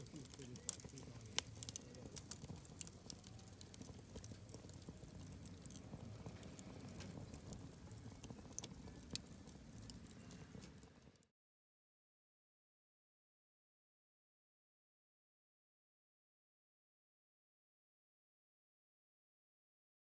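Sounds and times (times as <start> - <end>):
campfire crackling: 0.0 - 11.3.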